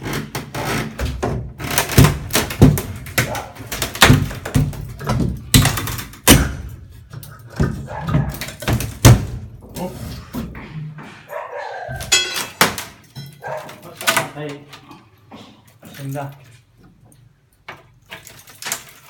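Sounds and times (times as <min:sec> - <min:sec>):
heavy thuds and knocks: 0:01.0 - 0:06.9.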